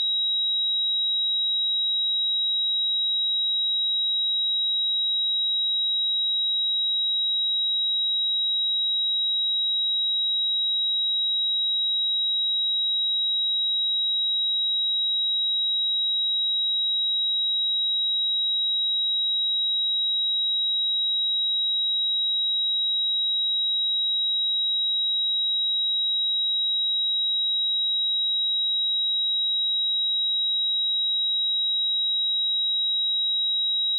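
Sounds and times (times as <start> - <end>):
sine-wave test tone: 0.0 - 33.9.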